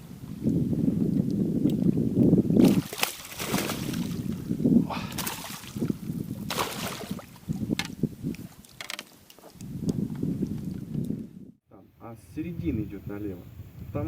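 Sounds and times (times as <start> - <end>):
water splashing against boat: 0.3 - 9.6.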